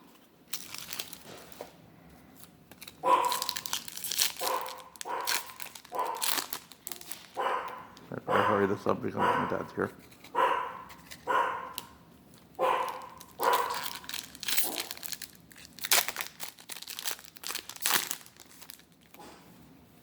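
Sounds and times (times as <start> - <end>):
foil wrappers crinkling: 0.2 - 8.0, 10.0 - 19.3
dog barking: 3.0 - 3.5, 4.4 - 6.3, 7.4 - 9.8, 10.4 - 11.8, 12.6 - 13.8.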